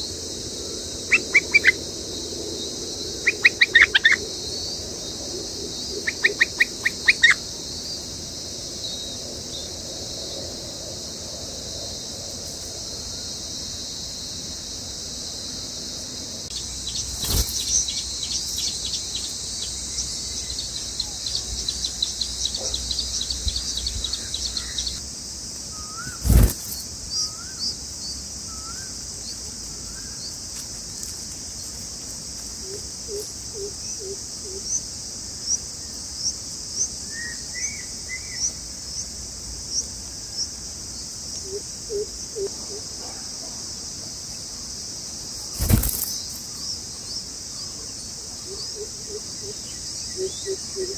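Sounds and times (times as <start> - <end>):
high insect drone: 0.0 - 50.9.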